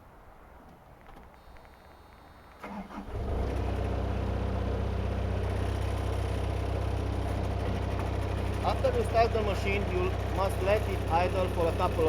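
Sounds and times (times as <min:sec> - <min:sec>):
diesel engine cranking and idling: 0:02.4 - 0:12.0.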